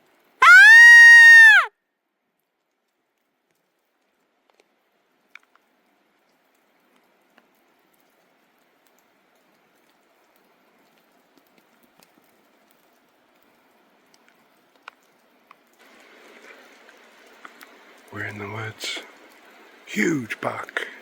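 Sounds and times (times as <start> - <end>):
faint steady hiss: 0.0 - 0.5, 1.5 - 21.0
small sharp ticks: 2.6 - 15.8.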